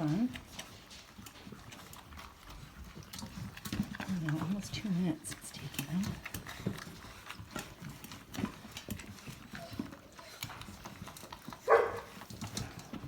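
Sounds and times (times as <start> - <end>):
puppy yelping: 11.6 - 12.8.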